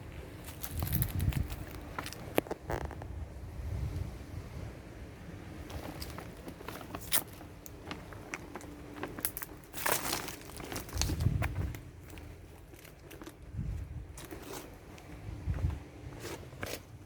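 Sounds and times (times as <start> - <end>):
plastic rustle: 5.7 - 13.4
plastic crinkling: 8.9 - 11.3.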